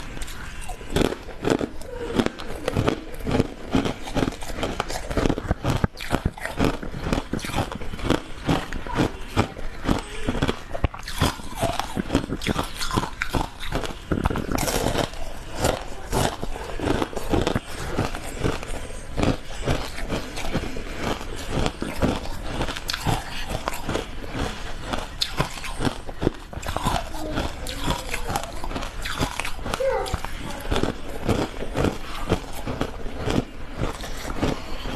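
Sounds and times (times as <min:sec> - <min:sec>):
crunching frozen ice: 0:00.0 - 0:34.9.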